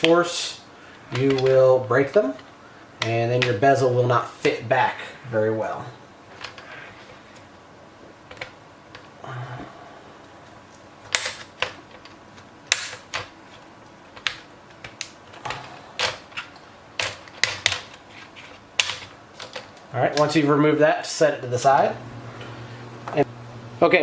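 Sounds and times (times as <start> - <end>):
plastic clips snapping: 11.1 - 13.4, 14.1 - 18.0.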